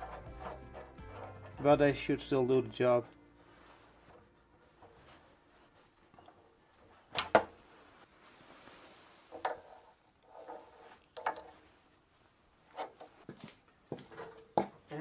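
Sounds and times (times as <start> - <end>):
bicycle pedals clicking and knocking: 0.0 - 2.4, 12.7 - 15.0.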